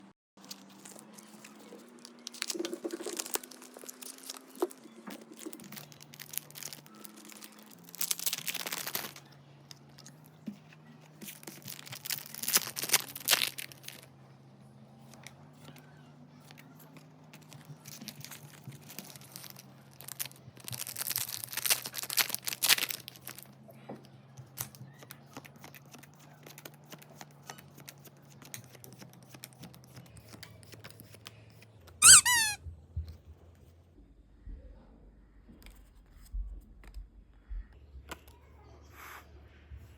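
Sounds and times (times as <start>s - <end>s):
packaging tearing and crinkling: 0.4s - 9.2s, 11.3s - 14.0s, 17.4s - 23.5s.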